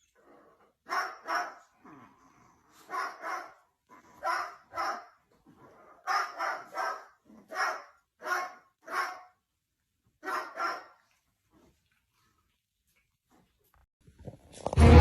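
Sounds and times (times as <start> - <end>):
dog barking: 0.8 - 1.7, 2.8 - 3.6, 4.2 - 5.2, 6.0 - 9.4, 10.2 - 11.1.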